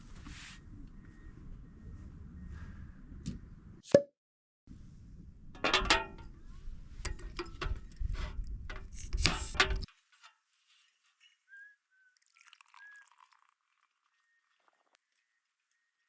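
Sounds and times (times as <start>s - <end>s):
faint bird chirps: 11.2s - 16.0s
liquid dripping and pouring: 12.1s - 16.0s.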